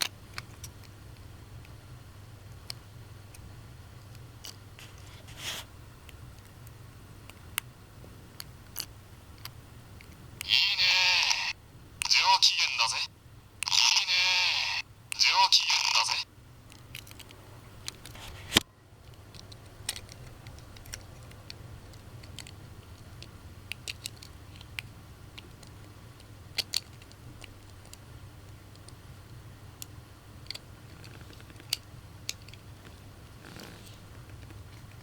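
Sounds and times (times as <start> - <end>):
steady low hum: 0.0 - 35.0
plastic toys clicking: 16.7 - 18.1, 19.1 - 22.6, 23.2 - 25.8, 26.5 - 28.0, 30.4 - 32.6.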